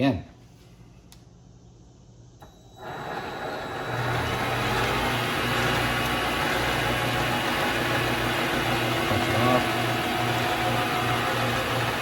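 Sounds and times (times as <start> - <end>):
lathe motor spinning: 2.4 - 12.0.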